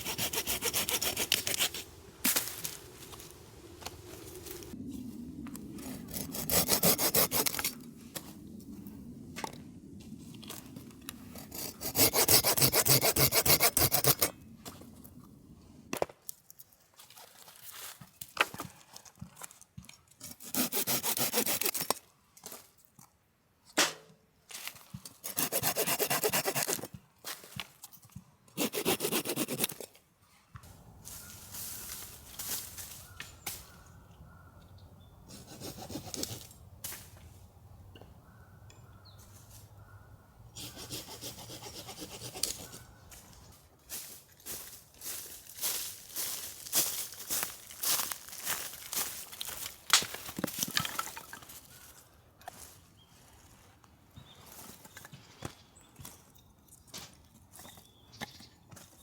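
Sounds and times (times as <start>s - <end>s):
hand saw rasping through wood: 0.0s - 1.8s, 5.8s - 7.6s, 11.4s - 14.3s, 20.2s - 21.9s, 25.2s - 26.9s, 28.6s - 29.8s, 35.3s - 36.4s, 40.6s - 42.8s.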